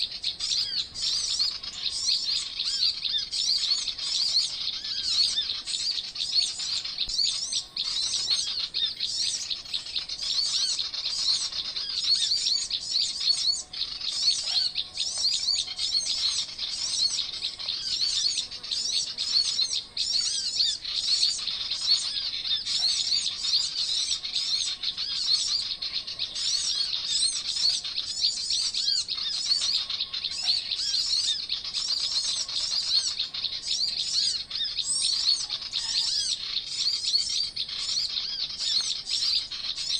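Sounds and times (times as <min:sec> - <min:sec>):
songbirds chirping and twittering: 0:00.0 - 0:39.9.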